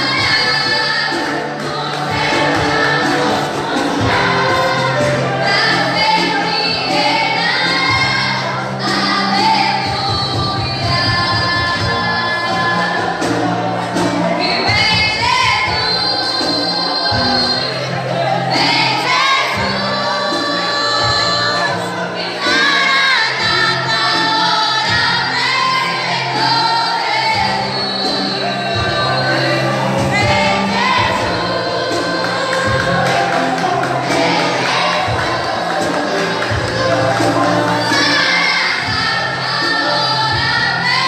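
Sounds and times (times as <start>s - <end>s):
group singing gospel: 0.0s - 41.0s
instrumental accompaniment: 0.0s - 41.0s.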